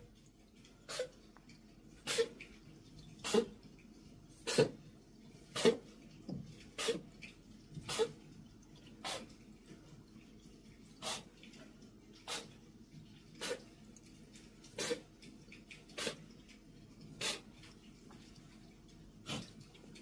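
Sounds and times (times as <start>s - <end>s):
cat sneezing: 0.9s - 1.2s, 2.0s - 2.4s, 3.2s - 3.5s, 4.4s - 4.8s, 6.8s - 7.0s, 7.9s - 8.2s, 9.0s - 9.3s, 12.3s - 12.5s, 13.4s - 13.6s, 14.8s - 15.1s, 16.0s - 16.2s, 17.2s - 17.4s.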